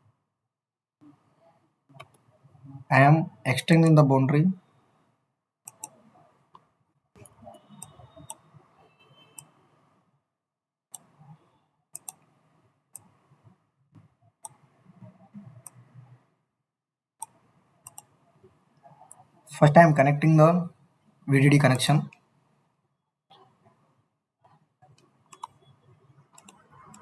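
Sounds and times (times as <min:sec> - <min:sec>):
faint low background noise: 0:00.0 - 0:27.0
computer mouse clicking: 0:02.0 - 0:02.3, 0:05.6 - 0:08.4, 0:10.9 - 0:12.3, 0:12.9 - 0:13.3, 0:14.4 - 0:14.8, 0:15.4 - 0:16.2, 0:17.2 - 0:18.2, 0:24.5 - 0:25.6, 0:26.2 - 0:27.0.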